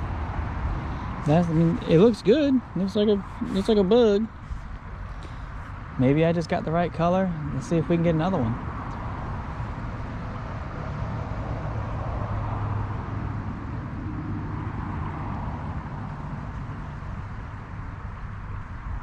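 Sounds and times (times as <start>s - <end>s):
vehicle passing rumble: 0.0s - 19.0s.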